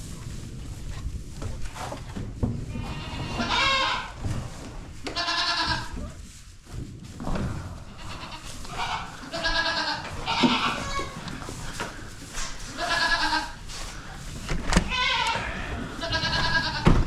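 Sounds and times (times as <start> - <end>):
goats bleating: 2.8 - 4.1, 5.1 - 5.9, 8.0 - 11.6, 12.7 - 13.6, 14.8 - 16.9.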